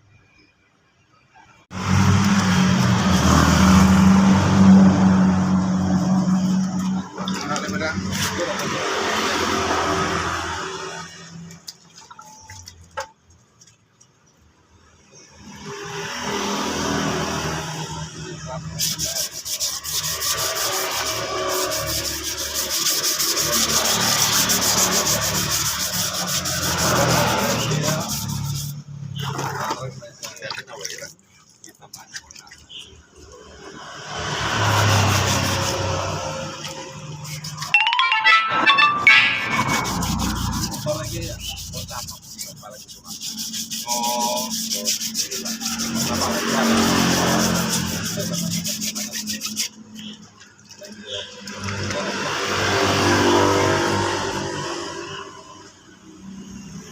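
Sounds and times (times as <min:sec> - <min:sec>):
sandpaper rubbing back and forth: 0:18.7 - 0:28.8, 0:34.8 - 0:37.7, 0:39.9 - 0:49.8.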